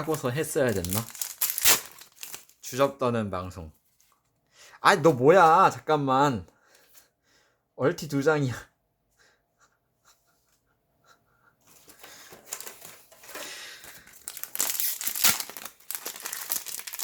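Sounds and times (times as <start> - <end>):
foil wrapper crinkling: 0.0 - 2.8, 12.4 - 17.0.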